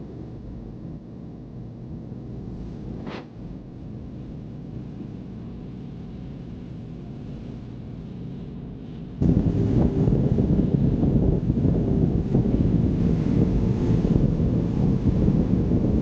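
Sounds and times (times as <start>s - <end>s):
wind buffeting microphone: 9.2s - 16.0s.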